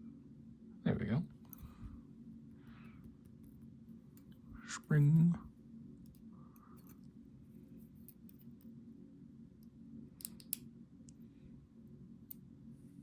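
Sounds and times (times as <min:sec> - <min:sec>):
steady low hum: 0:00.0 - 0:13.0
small lock pins clicking: 0:10.2 - 0:10.7.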